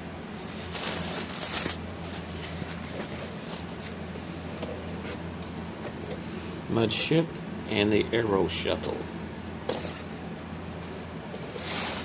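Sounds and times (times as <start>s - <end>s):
low room hum: 0.0s - 12.0s
boxes rustling: 0.3s - 6.4s, 9.6s - 12.0s.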